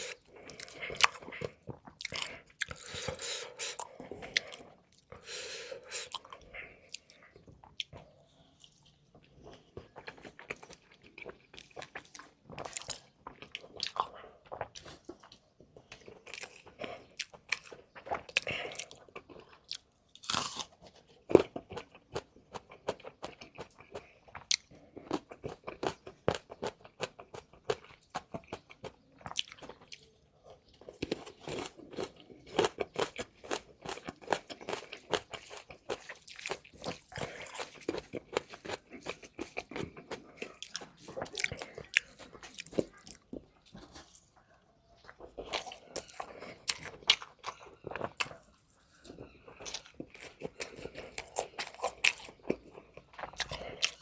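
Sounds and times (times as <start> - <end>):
person chewing and crunching food: 0.0 - 54.0.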